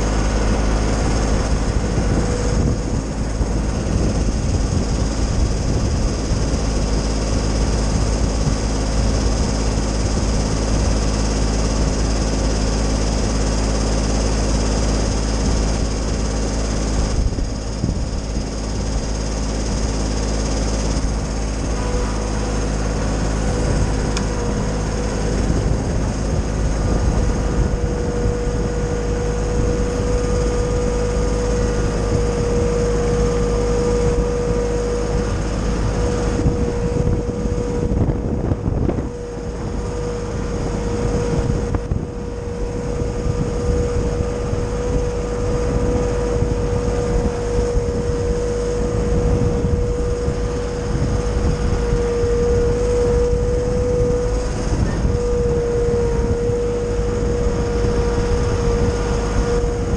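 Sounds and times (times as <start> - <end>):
tractor engine running: 0.0 - 59.9
wood chipper whine: 0.0 - 59.9.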